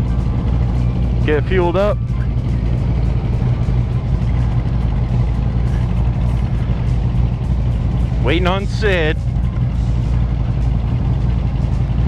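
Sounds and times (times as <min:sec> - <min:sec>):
motorcycle engine idling: 0:00.0 - 0:12.0.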